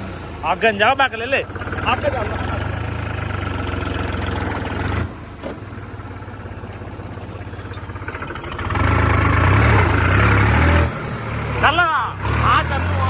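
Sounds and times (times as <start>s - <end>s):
tractor diesel engine revving: 0.0s - 13.0s.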